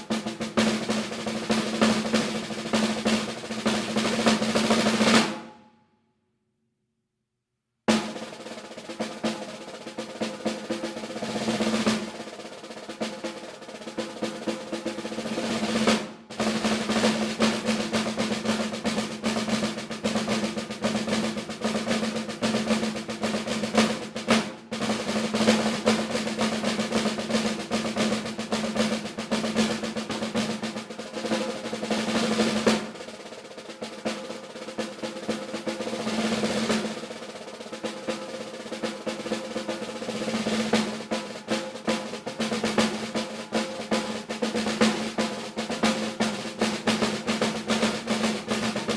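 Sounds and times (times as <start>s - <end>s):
snare drum rolls: 0.0s - 5.6s, 7.9s - 48.9s.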